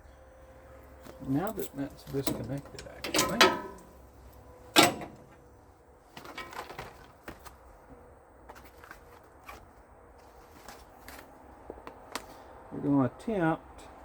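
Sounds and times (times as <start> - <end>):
tools clicking and clinking: 1.4 - 3.9.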